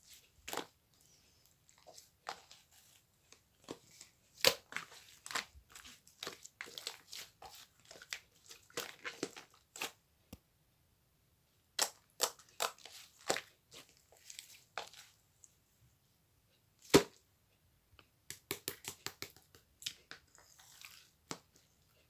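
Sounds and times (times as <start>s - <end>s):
crinkling and crunching: 0.1s - 10.0s.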